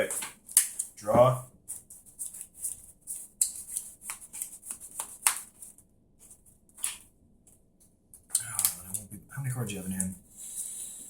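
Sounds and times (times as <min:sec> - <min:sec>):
cards rustling and clicking: 0:00.0 - 0:07.1.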